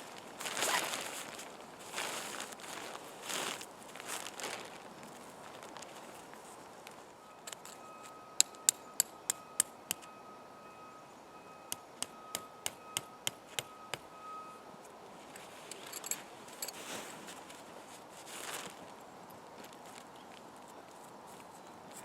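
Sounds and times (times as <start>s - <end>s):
tent stakes being hammered: 8.4s - 10.1s, 11.7s - 14.1s.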